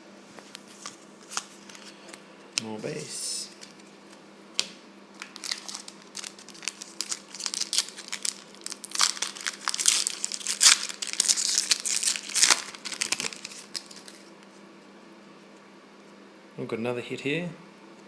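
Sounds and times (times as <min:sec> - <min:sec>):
faint steady hum: 0:00.0 - 0:18.0
card pack wrapper crinkling: 0:05.2 - 0:14.3.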